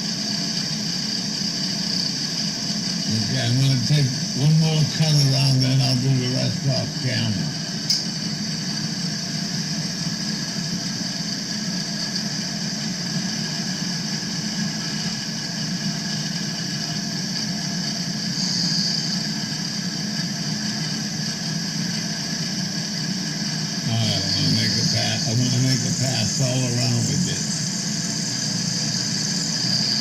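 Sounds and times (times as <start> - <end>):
milling machine motor hum: 0.0 - 30.0.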